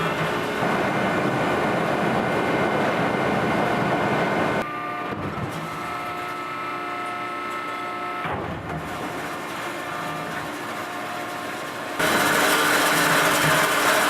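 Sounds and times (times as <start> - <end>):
loud rushing machine noise: 0.0 - 5.8, 11.6 - 14.0
steady mechanical hum: 0.0 - 14.0.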